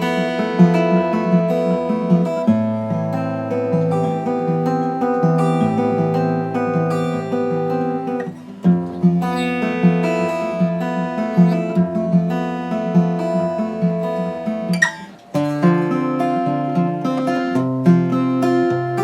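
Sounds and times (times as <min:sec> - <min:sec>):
fingerstyle acoustic guitar: 0:00.0 - 0:19.0
guitar string squeak: 0:14.7 - 0:15.3.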